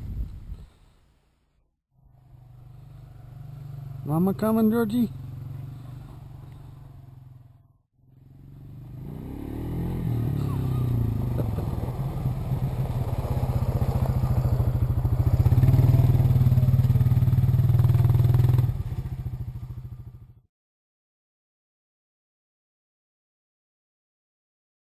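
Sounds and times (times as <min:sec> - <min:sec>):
small engine revving: 0:02.0 - 0:20.3.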